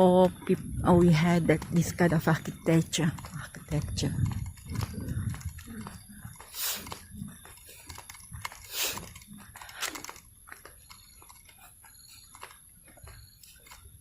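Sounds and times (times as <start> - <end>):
short crunching noises: 3.6 - 14.0.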